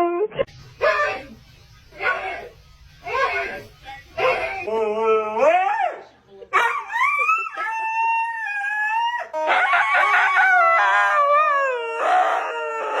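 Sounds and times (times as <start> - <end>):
dog howling: 6.6 - 13.0.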